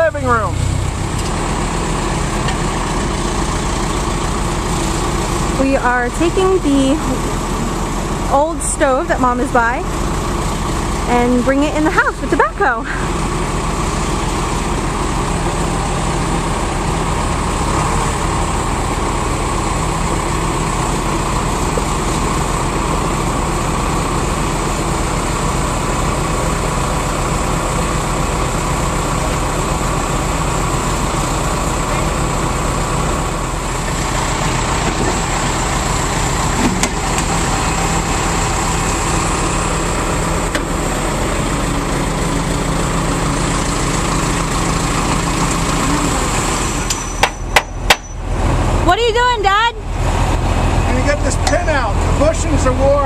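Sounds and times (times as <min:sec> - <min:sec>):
backhoe engine idling: 0:00.0 - 0:53.0
sharp knock: 0:47.2 - 0:48.1.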